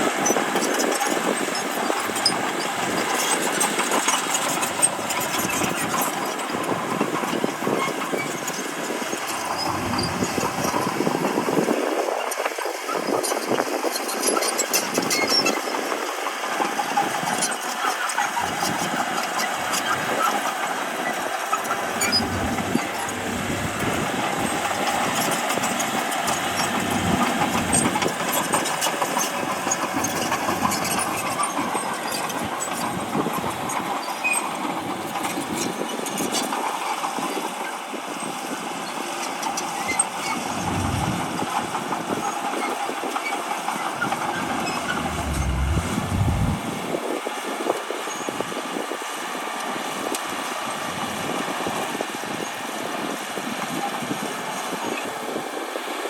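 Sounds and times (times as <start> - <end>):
bulldozer diesel engine running: 8.2 - 11.5, 18.4 - 32.3, 39.7 - 42.5, 43.2 - 46.9.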